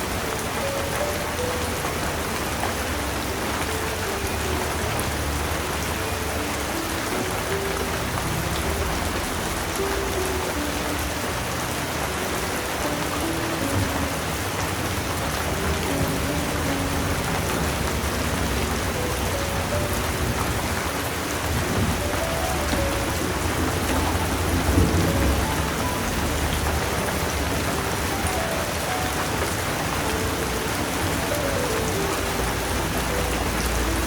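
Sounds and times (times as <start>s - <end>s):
soft piano melody: 0.0s - 34.0s
steady rain: 0.0s - 34.0s
low rumble of thunder: 21.5s - 27.9s.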